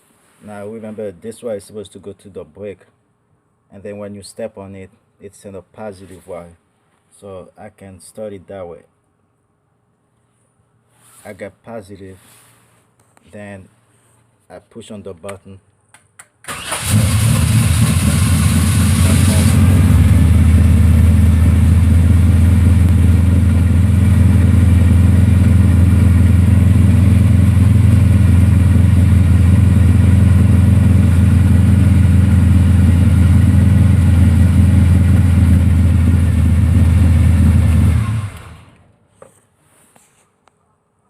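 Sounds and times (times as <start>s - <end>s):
car engine idling: 16.7s - 38.8s.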